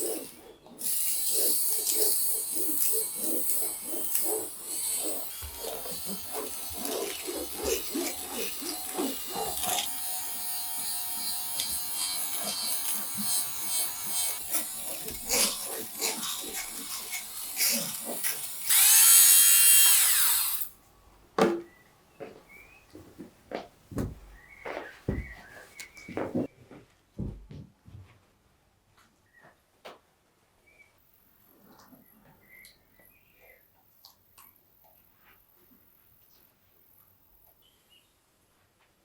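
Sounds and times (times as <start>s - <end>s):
small electric motor whirring: 0.0s - 20.8s.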